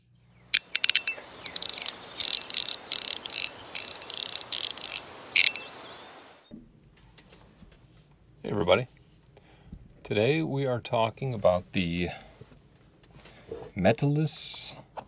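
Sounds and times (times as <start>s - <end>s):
rapid ratcheting clicks: 0.5s - 5.8s
fidget coin clicking: 0.6s - 5.8s.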